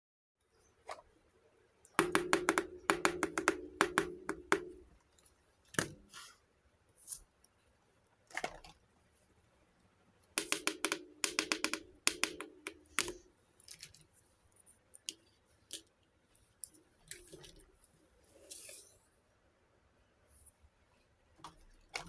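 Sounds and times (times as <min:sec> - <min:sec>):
plastic clicks and crackles: 0:10.4 - 0:14.1.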